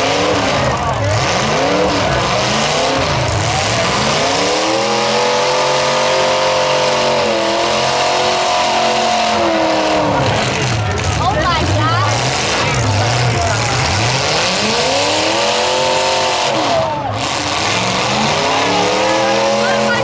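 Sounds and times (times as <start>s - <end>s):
car engines revving hard: 0.0s - 20.0s.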